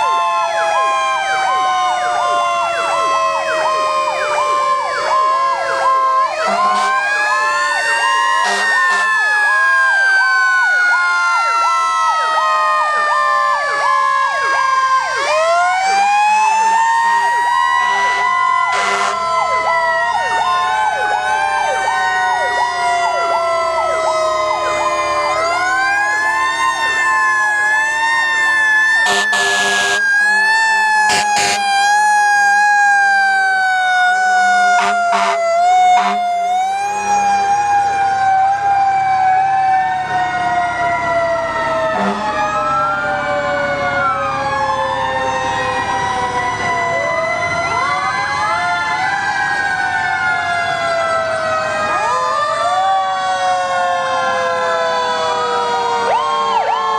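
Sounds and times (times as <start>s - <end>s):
fire truck sirens: 0.0s - 56.9s
loud horn blasts: 6.4s - 7.0s, 8.4s - 9.1s, 17.9s - 19.3s, 29.0s - 30.4s, 31.1s - 31.8s, 34.7s - 36.3s, 41.9s - 42.3s.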